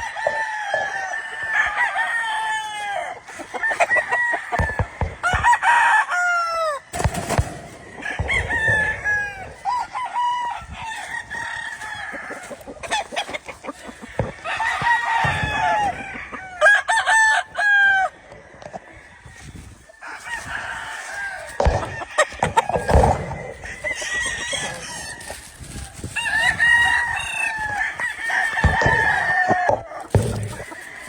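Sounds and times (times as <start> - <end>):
roosters crowing: 0.0 - 31.0
sharp knocks: 21.6 - 23.9, 28.5 - 31.0.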